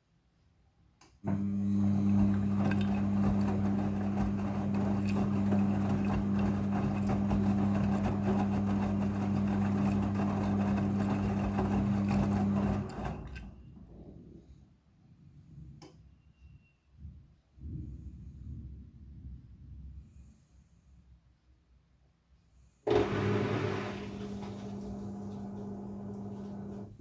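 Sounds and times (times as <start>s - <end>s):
washing machine humming: 1.2s - 13.7s, 22.9s - 27.0s.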